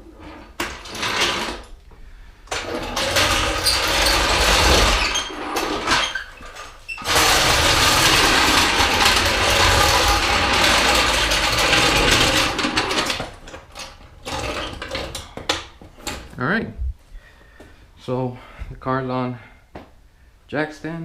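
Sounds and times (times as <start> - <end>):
loud mechanical rattling: 2.5 - 6.0, 7.0 - 15.3.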